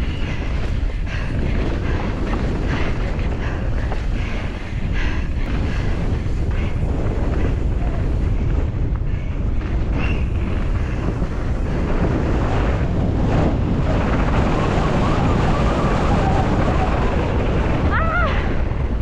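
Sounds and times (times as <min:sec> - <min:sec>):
wind rushing over microphone: 0:00.0 - 0:19.0.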